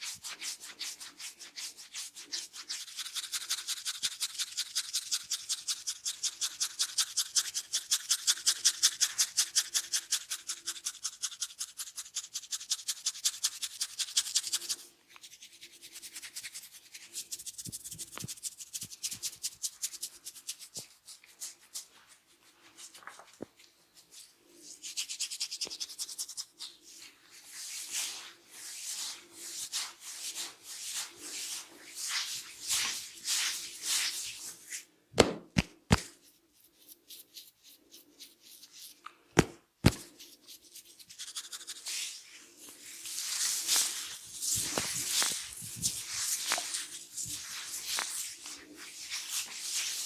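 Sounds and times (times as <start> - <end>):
hands scratching through hair: 0.0 - 23.3, 24.0 - 50.0
sharp snaps: 35.2 - 36.1.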